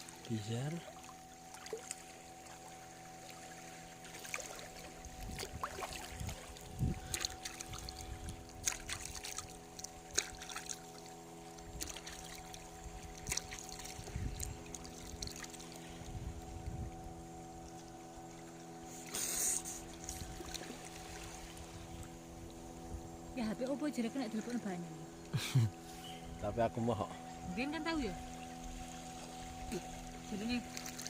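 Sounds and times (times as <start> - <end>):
boat engine running: 0.0 - 31.0
water splashing and trickling: 0.0 - 31.0.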